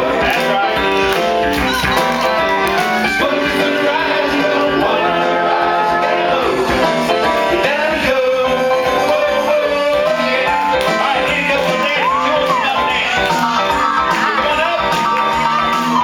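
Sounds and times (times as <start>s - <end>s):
song with sung melody: 0.0s - 16.0s.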